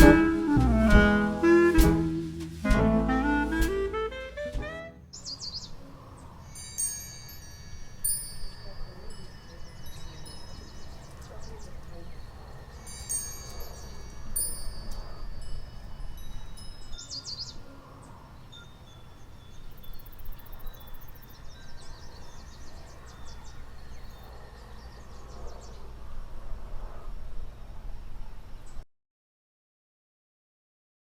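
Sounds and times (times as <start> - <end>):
wind chimes tinkling: 6.4 - 17.6, 18.5 - 20.2.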